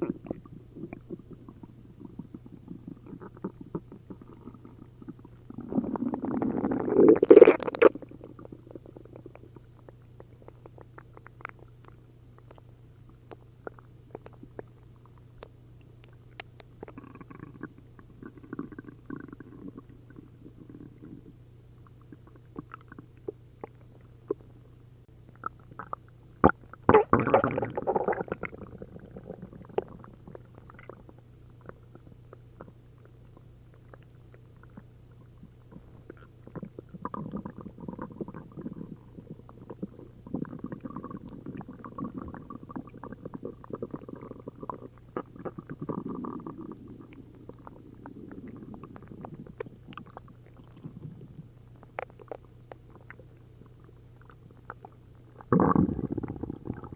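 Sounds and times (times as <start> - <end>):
stomach gurgling and rumbling: 0.0 - 56.9.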